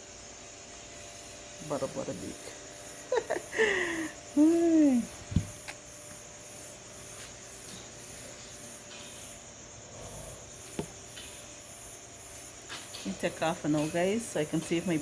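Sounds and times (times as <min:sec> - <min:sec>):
insects chirping: 0:00.0 - 0:15.0
steady low hiss: 0:00.0 - 0:15.0
thump: 0:05.3 - 0:05.6.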